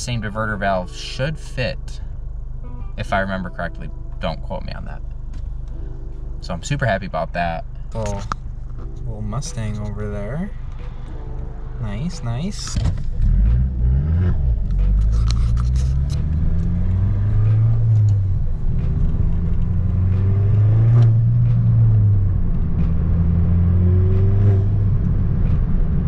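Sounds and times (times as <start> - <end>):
car engine accelerating: 0.0 - 26.0.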